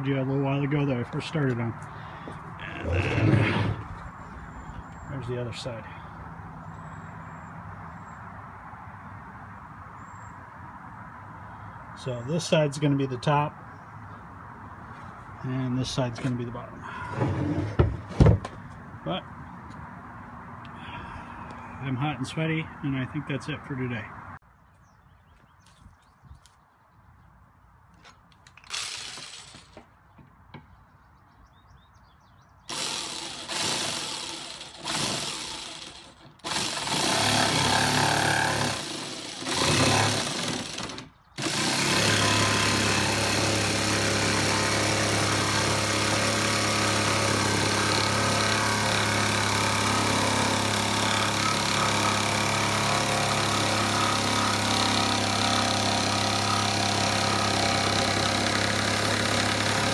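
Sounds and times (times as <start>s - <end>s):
power tool motor humming: 32.7s - 59.9s.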